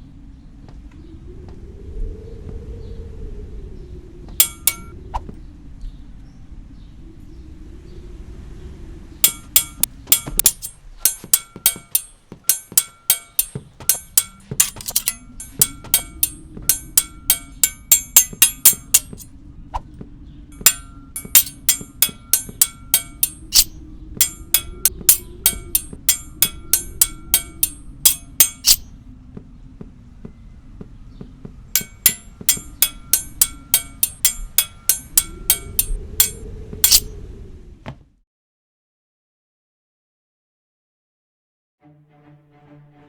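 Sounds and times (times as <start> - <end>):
metal pieces clashing: 9.6 - 19.2, 20.6 - 23.7, 27.6 - 28.8, 36.8 - 37.0.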